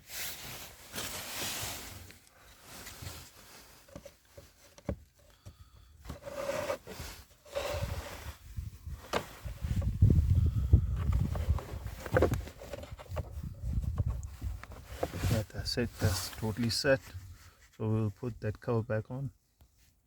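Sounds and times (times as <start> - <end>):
filter scraping against plastic: 3.8 - 17.6.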